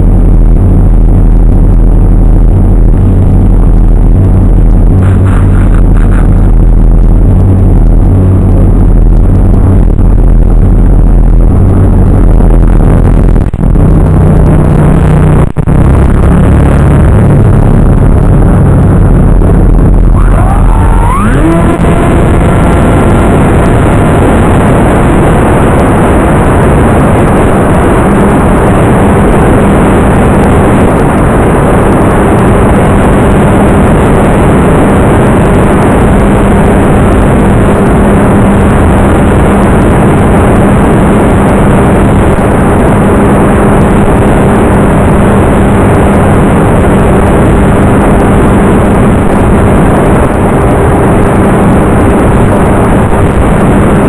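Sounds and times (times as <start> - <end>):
loud rushing noise: 0.0 - 43.3
steady low hum: 0.0 - 54.0
model plane motor and propeller: 20.0 - 41.7.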